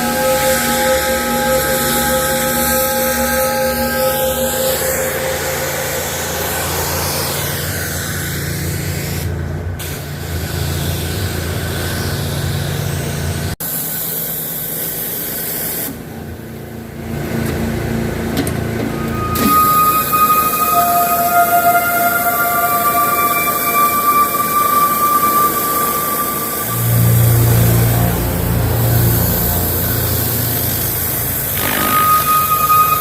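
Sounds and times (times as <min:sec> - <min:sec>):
steady high tones: 0:00.0 - 0:08.2, 0:18.8 - 0:33.0.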